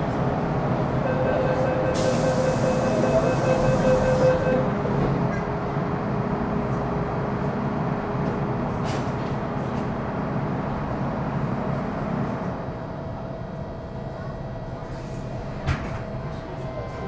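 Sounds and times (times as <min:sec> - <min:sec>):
train wheels rumbling on rail: 0:00.0 - 0:17.0
traction control whine: 0:00.9 - 0:05.2.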